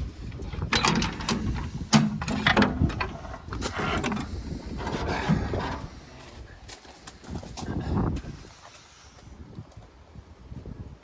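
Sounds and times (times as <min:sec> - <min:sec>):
metal parts clinking and scraping: 0:00.4 - 0:05.9.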